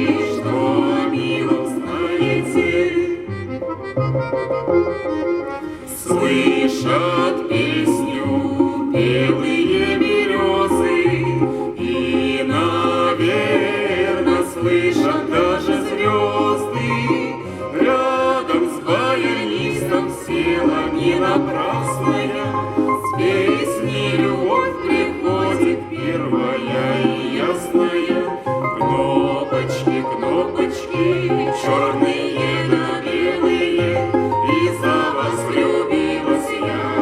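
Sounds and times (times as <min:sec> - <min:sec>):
bass line: 0:00.0 - 0:05.6
button accordion: 0:00.0 - 0:37.0.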